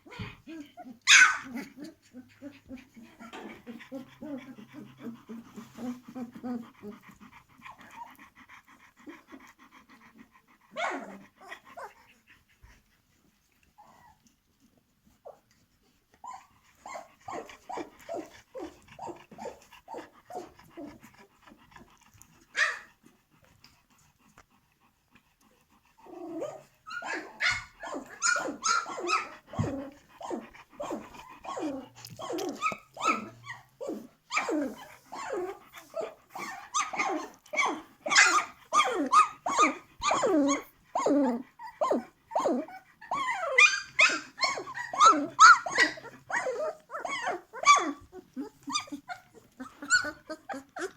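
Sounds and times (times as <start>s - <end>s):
puppies squeaking and whimpering: 26.2s - 50.9s.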